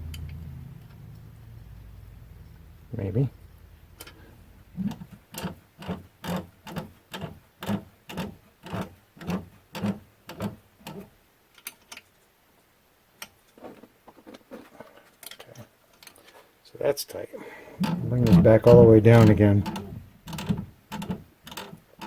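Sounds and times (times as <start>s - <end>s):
hand tool clicking on bolts: 4.9s - 12.1s, 17.8s - 22.0s.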